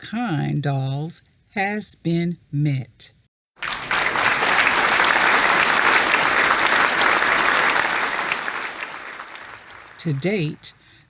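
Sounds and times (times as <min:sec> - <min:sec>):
crowd applauding: 0:03.6 - 0:10.8.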